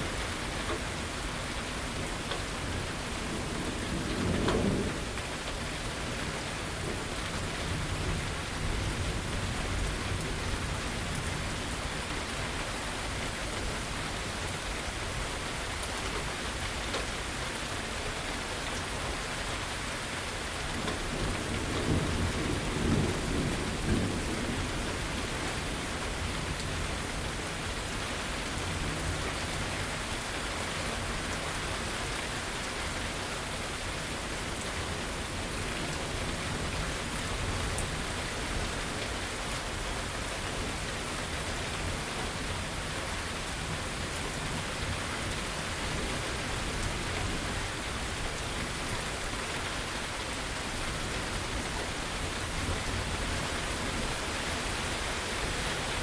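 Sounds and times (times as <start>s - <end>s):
heavy rain falling: 0.0s - 56.0s
low thunder rumbling: 3.0s - 5.2s, 21.1s - 26.6s.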